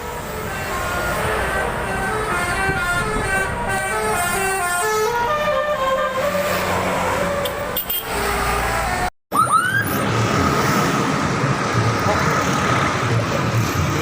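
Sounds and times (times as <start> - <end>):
vehicle noise: 0.0 - 14.0
multi-tone musical air horn: 0.5 - 9.1.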